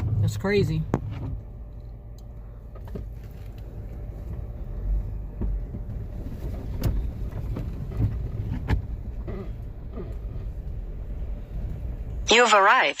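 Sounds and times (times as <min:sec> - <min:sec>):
car engine and road rumble: 0:00.0 - 0:13.0
car knocks and clunks: 0:00.8 - 0:01.5, 0:02.7 - 0:04.5, 0:05.2 - 0:10.5.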